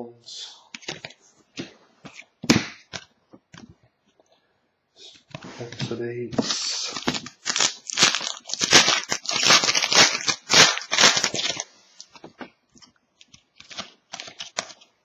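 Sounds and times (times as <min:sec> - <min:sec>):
cards clicking and tapping: 0:00.7 - 0:03.8
plastic wrapper crinkling and tearing: 0:06.5 - 0:15.0.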